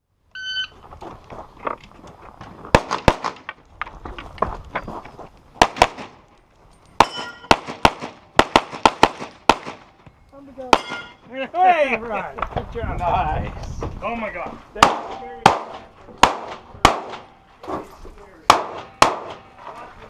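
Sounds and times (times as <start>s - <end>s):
pistol shots: 2.7s - 3.4s, 5.6s - 6.2s, 7.0s - 9.9s, 14.8s - 17.3s, 18.5s - 19.4s
metallic ring of steel targets: 7.0s - 7.5s, 10.7s - 11.2s.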